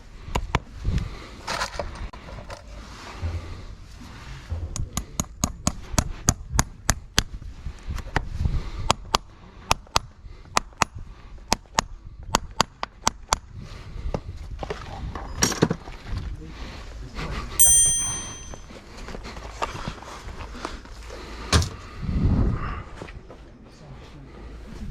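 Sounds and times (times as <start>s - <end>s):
hammer striking steel: 17.6s - 18.6s
metallic ring: 17.6s - 18.6s.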